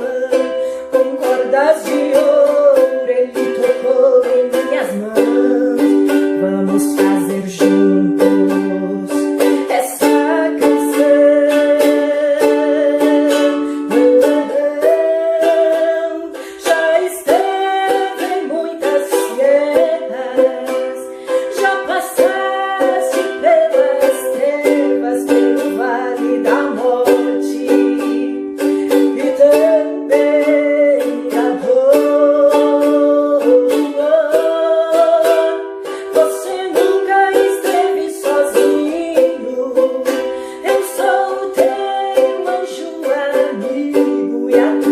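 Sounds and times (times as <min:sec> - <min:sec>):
ukulele strumming a hymn: 0:00.0 - 0:44.9.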